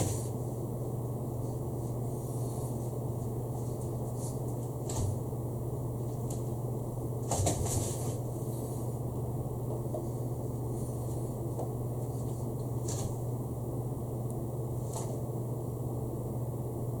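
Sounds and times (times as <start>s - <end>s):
low electrical hum: 0.0s - 17.0s
soft rustles: 1.4s - 5.2s, 10.7s - 13.3s.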